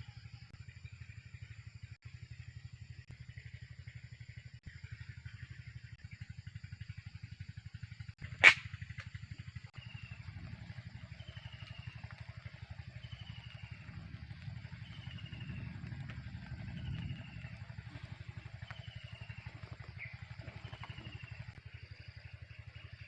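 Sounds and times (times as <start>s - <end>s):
small engine running: 0.0s - 23.0s
sharp click: 8.4s - 9.1s
bird chirping: 12.9s - 21.6s.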